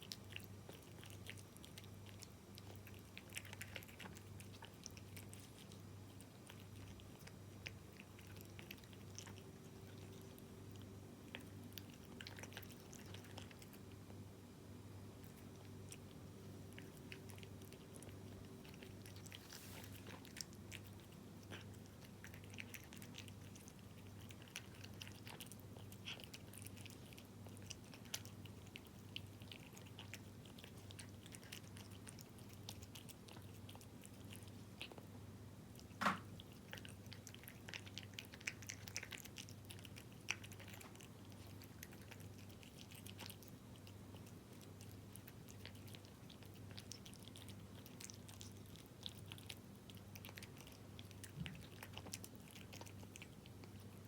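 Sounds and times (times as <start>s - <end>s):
cat chewing and lapping food: 0.0s - 54.0s.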